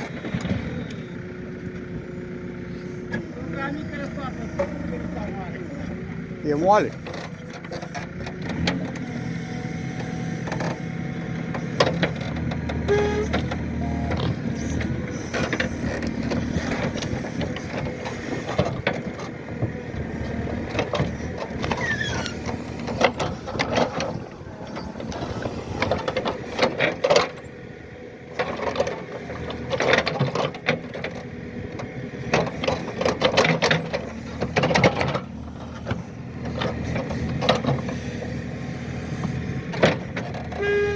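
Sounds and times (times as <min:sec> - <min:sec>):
excavator running: 0:00.0 - 0:40.9.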